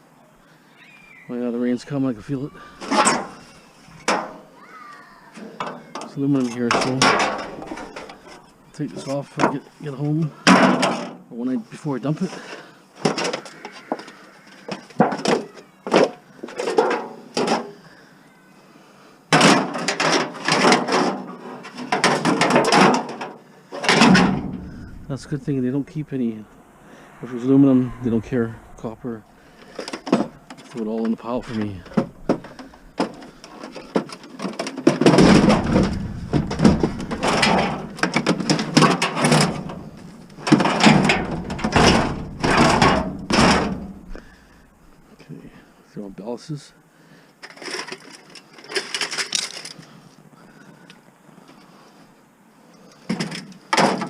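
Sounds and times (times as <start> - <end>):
scrap metal clanking: 5.4 - 9.6, 19.4 - 45.2
scrap metal rattling clatter: 5.4 - 9.6, 19.4 - 26.0, 29.4 - 45.1.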